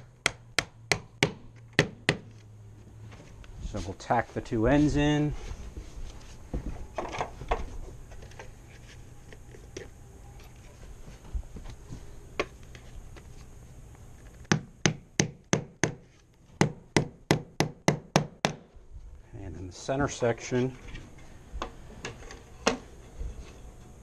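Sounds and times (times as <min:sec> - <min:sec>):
hammer tapping nails: 0:00.0 - 0:02.3.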